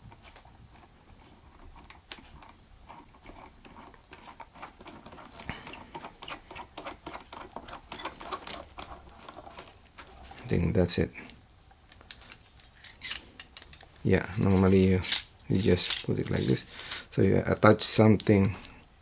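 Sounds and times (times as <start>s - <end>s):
small tool parts clicking and tapping: 11.9s - 13.9s.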